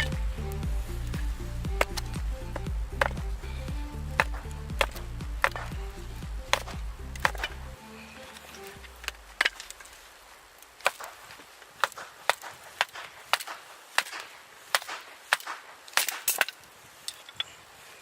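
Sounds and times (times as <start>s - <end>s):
wood chopping knocks: 1.2s - 3.4s, 4.1s - 7.6s.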